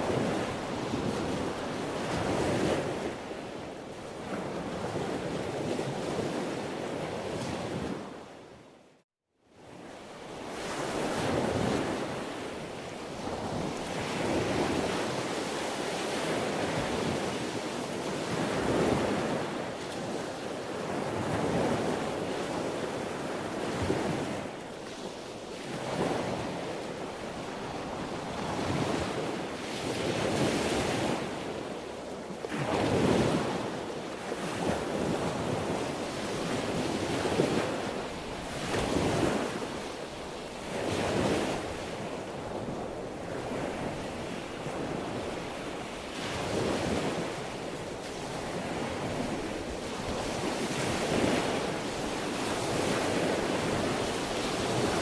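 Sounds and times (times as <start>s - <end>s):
sea waves breaking: 10.3s - 55.0s.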